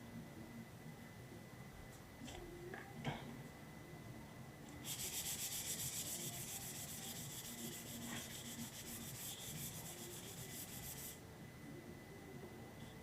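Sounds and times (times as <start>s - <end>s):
sandpaper rubbing on plastic: 4.8s - 11.2s.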